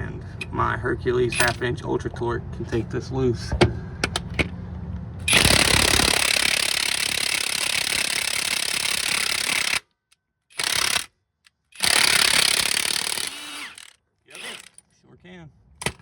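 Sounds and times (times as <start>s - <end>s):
impact wrench hammering: 5.2s - 9.8s, 10.5s - 11.1s, 11.8s - 14.8s.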